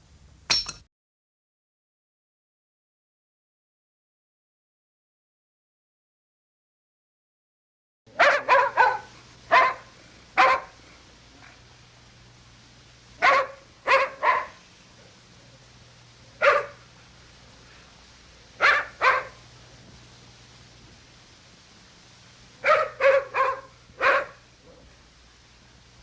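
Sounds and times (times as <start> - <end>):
dog barking: 8.1 - 10.8, 13.2 - 15.1, 16.3 - 17.0, 18.5 - 19.5, 22.6 - 25.0
faint low hum: 8.1 - 26.0.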